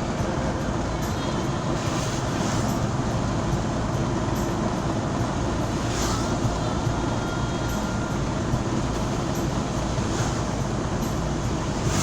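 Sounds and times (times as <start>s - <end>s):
vehicle engine and tyre rumble: 0.0s - 12.0s.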